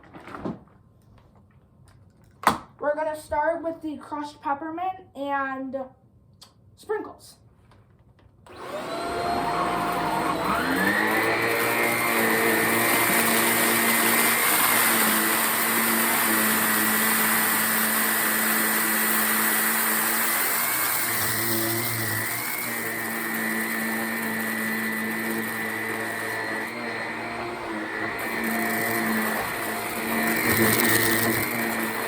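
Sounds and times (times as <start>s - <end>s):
vacuum cleaner motor whining: 8.5s - 32.0s.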